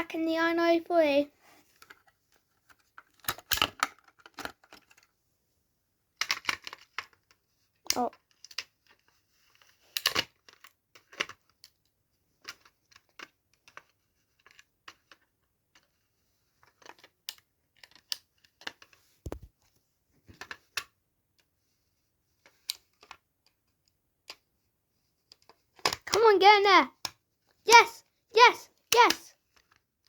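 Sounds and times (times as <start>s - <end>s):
plastic clicks and taps: 18.6s - 19.5s.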